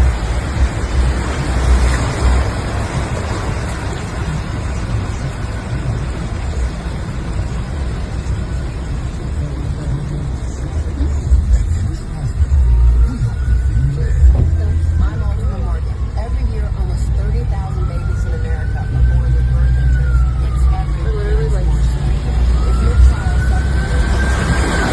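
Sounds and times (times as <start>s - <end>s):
deep uneven rumble: 0.0s - 24.9s
road traffic noise: 0.0s - 24.9s
vehicle passing: 17.9s - 24.9s.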